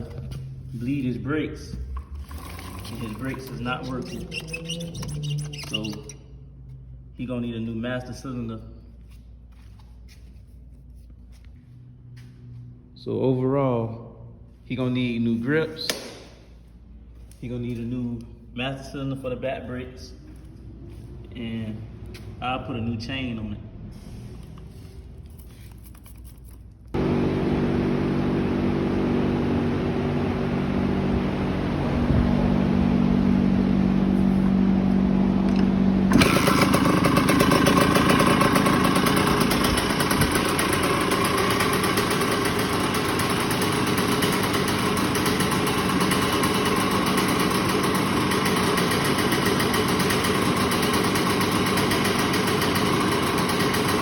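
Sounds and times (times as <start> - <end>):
two-stroke engine running: 1.7 - 6.2, 26.9 - 54.0.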